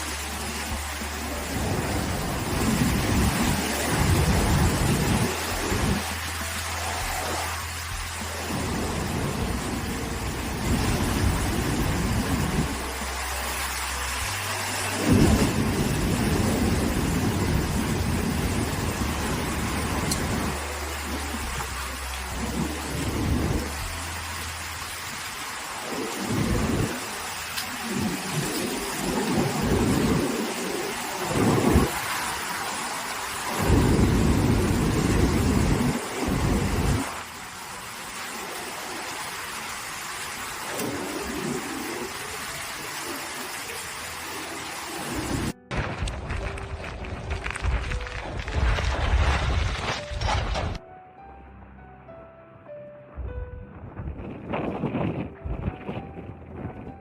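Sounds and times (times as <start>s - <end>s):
wind rushing: 0.0s - 24.0s, 24.8s - 37.4s, 53.2s - 57.0s
loud low rumble: 0.0s - 25.1s, 53.2s - 57.0s
heavy rain: 0.0s - 50.8s
wind gusts buffeting microphone: 1.4s - 6.1s, 25.8s - 37.2s, 53.6s - 57.0s.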